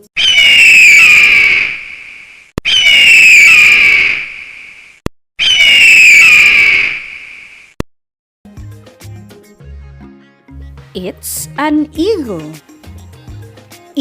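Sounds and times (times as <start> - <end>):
eagle screaming: 0.1 - 4.8, 5.4 - 7.6.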